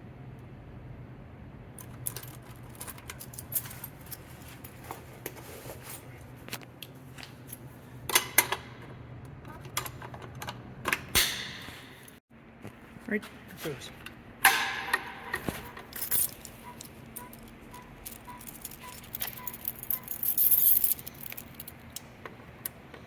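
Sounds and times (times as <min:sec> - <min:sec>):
low steady hum: 0:00.0 - 0:23.0
keys jangling: 0:01.8 - 0:05.0, 0:15.8 - 0:21.9.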